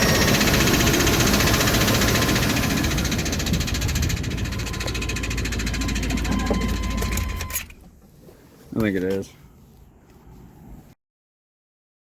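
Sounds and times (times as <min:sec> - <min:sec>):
engine idling with knocking clatter: 0:00.0 - 0:08.0.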